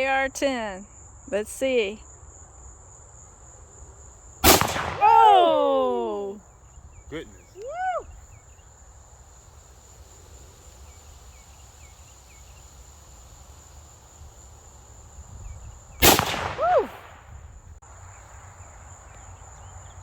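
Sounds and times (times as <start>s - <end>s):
rifle shot: 4.4s - 5.4s, 16.0s - 17.4s
person exclaiming: 5.0s - 6.4s, 7.2s - 8.0s
high-pitched insect drone: 7.1s - 16.0s.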